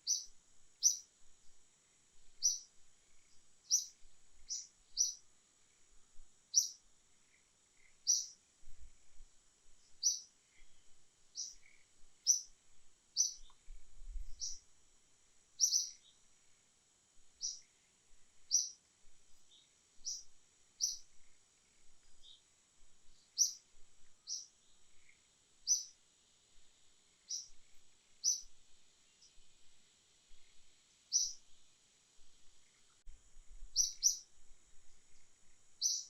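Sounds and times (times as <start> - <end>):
bird chirping: 0.0 - 1.1, 2.4 - 5.2, 6.5 - 8.4, 9.8 - 12.6, 13.2 - 13.7, 14.3 - 14.7, 15.6 - 16.2, 17.4 - 17.7, 18.5 - 18.8, 19.4 - 22.5, 23.1 - 23.6, 24.2 - 26.0, 27.2 - 29.5, 30.3 - 31.4, 33.7 - 34.3, 35.8 - 36.0.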